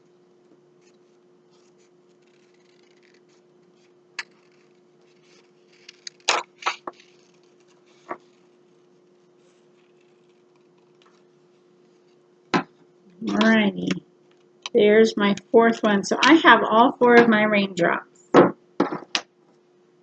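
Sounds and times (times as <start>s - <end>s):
steady low hum: 0.0s - 19.2s
paper crackling: 0.9s - 11.3s
scissors snipping paper: 4.2s - 8.2s.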